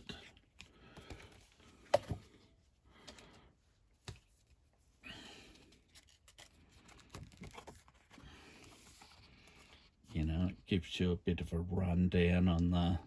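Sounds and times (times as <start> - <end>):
paper rustling: 5.5 - 9.9.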